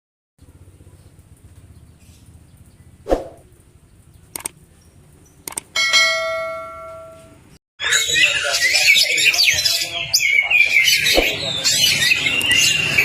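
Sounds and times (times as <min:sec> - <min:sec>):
short clicks: 0:04.3 - 0:04.6, 0:05.4 - 0:05.7.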